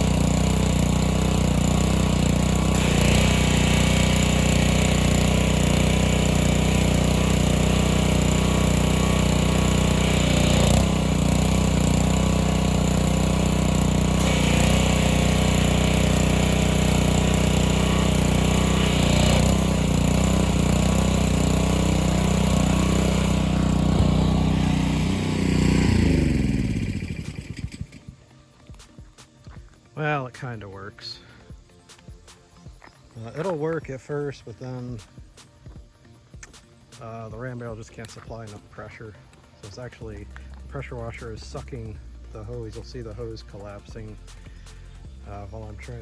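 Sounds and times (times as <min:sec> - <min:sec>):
hissing water spray: 0:00.0 - 0:28.1
pressure washer engine running: 0:00.0 - 0:28.2, 0:37.6 - 0:46.0.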